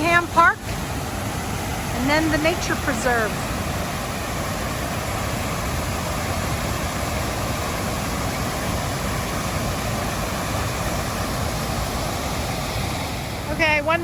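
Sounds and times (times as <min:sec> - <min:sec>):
waterfall roaring: 0:00.0 - 0:14.0.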